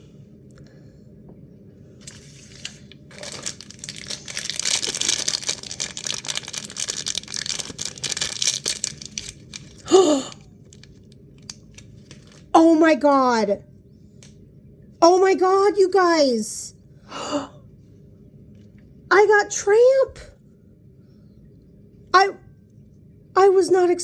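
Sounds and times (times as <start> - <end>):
plastic wrapping torn and crinkled: 2.0 - 9.9, 10.6 - 12.5.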